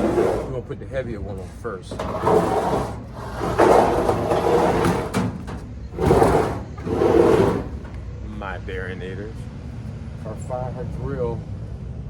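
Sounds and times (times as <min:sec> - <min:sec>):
washing machine scraping floor: 0:00.0 - 0:08.0.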